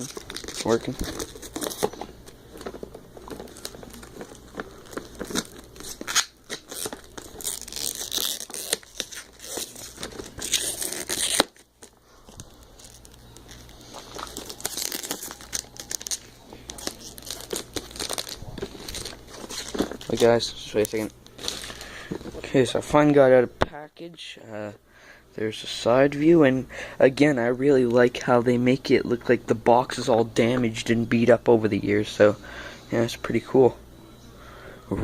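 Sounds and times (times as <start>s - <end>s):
packaging tearing and rustling: 0.0s - 22.5s
knife cutting packaging: 3.3s - 11.9s, 12.9s - 20.2s.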